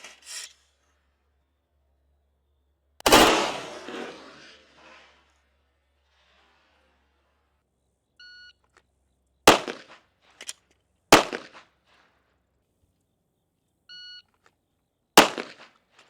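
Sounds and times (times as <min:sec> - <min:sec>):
pistol shots: 0:03.0 - 0:04.5, 0:09.5 - 0:10.0, 0:11.1 - 0:11.7, 0:15.2 - 0:15.7.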